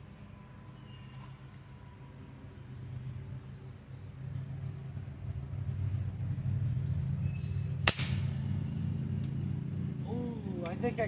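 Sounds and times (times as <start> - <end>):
steady low rumble: 0.0 - 11.0
pellet gun crack: 7.8 - 8.4.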